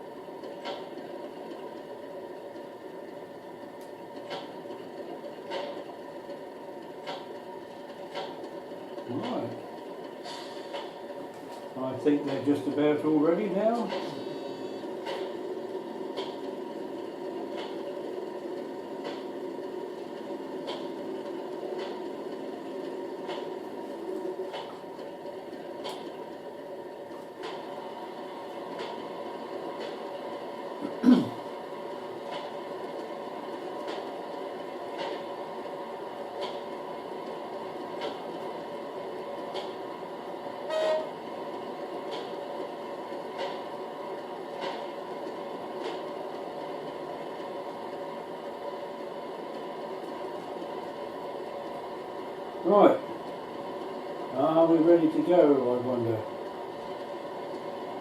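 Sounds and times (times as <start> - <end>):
short pitched tone: 40.7 - 41.1.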